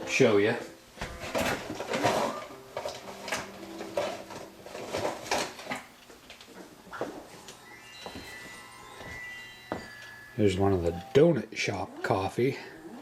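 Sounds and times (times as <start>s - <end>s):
packaging rustling: 1.6s - 8.4s.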